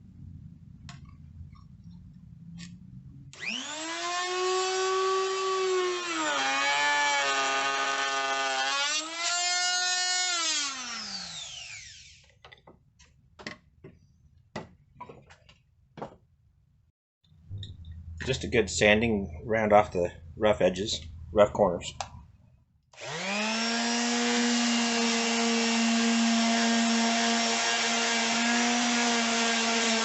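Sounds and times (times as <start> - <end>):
router whine: 3.3 - 12.3, 23.0 - 30.0.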